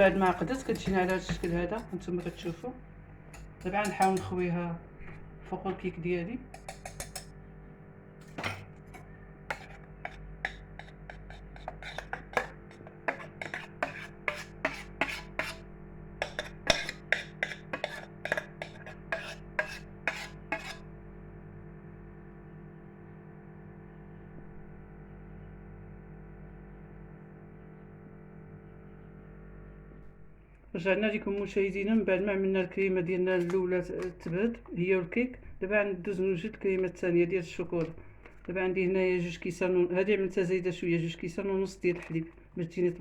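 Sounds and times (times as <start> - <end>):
utensil scraping a pot: 0.0 - 5.2, 6.5 - 7.3, 8.2 - 20.9, 31.4 - 34.8, 36.1 - 38.6, 41.1 - 43.0.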